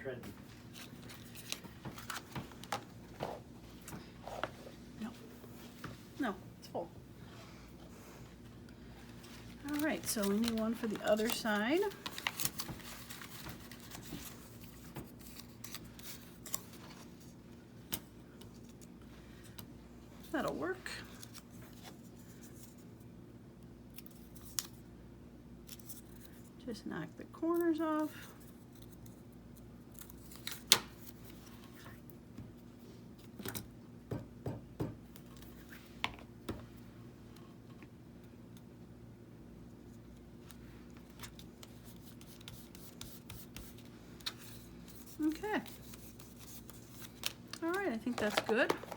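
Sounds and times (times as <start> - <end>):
faint steady hum: 0.0 - 48.9
paper rustling: 9.0 - 17.3.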